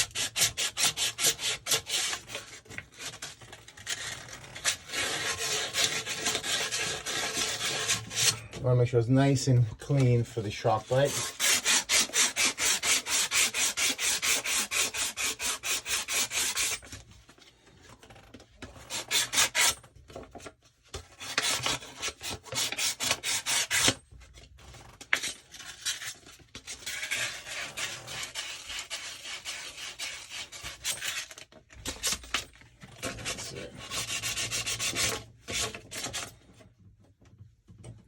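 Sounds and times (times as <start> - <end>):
sandpaper scrubbing on pipe: 0.0 - 3.2, 3.9 - 8.4, 10.2 - 16.9, 18.8 - 19.8, 21.2 - 24.0, 26.8 - 31.3, 33.0 - 36.3.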